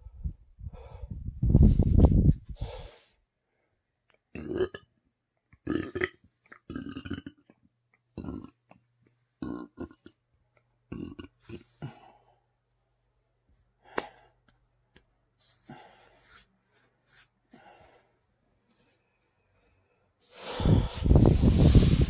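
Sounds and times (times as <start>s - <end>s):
deep burps: 4.3s - 4.9s, 5.6s - 7.5s, 8.2s - 8.6s, 9.4s - 10.2s, 10.9s - 11.6s.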